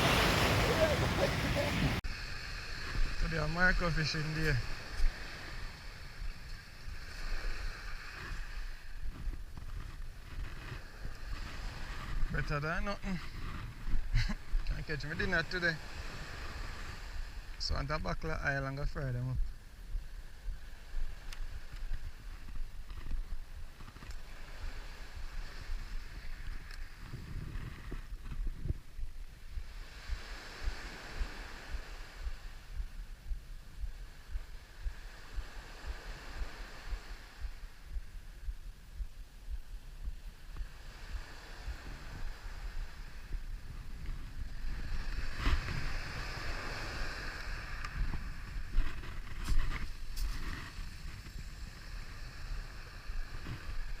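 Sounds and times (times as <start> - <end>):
wind buffeting microphone: 0.0 - 17.6, 18.8 - 54.0.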